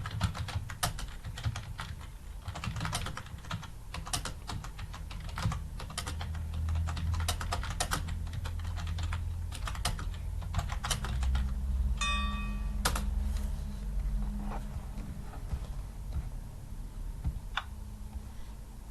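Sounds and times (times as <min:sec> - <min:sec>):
steady low hum: 0:00.0 - 0:18.9
high tonal chirp: 0:12.0 - 0:12.9.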